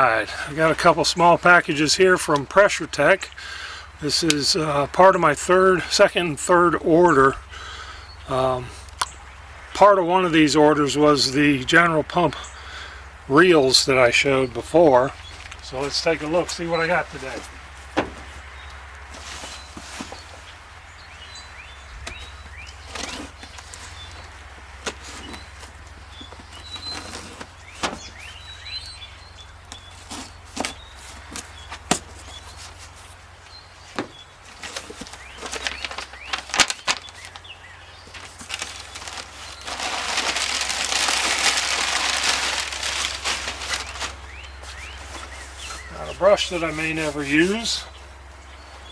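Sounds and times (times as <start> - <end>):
faint birds chirping: 0.0 - 48.9
packaging rustling: 15.0 - 20.5, 22.1 - 28.5, 34.0 - 47.8.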